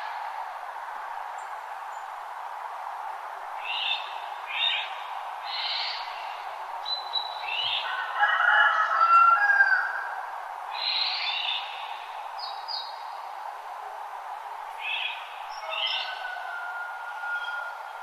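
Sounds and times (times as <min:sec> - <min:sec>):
background hiss: 0:00.0 - 0:07.9, 0:10.0 - 0:18.0
whistled bird song: 0:17.2 - 0:17.8.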